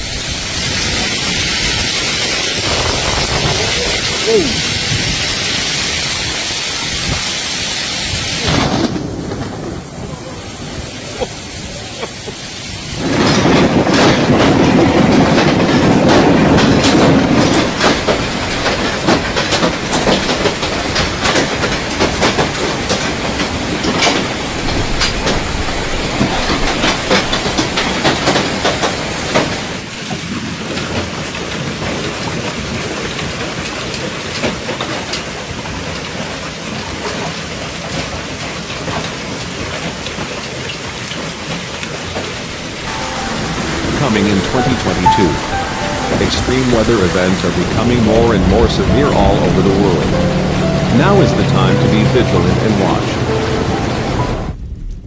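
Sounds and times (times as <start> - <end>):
hailstones rattling on surfaces: 13.0 - 42.4.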